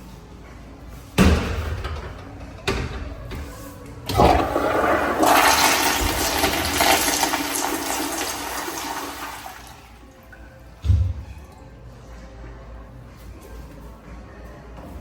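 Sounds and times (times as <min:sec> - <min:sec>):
toilet flush click: 0:04.1 - 0:09.8
toilet flushing water rushing: 0:04.1 - 0:10.4.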